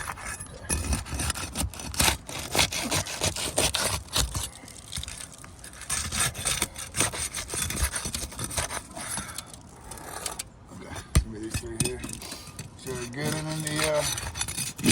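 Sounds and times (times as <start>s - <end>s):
scraping on roof shingles: 0.0s - 10.4s.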